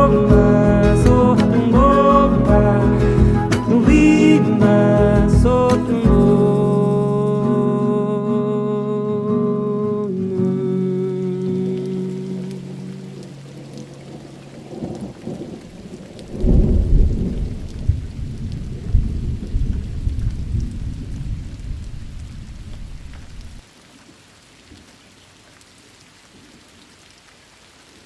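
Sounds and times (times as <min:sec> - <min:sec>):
steady rain: 0:00.0 - 0:07.9, 0:09.2 - 0:28.0
thunder rolling: 0:14.7 - 0:23.6.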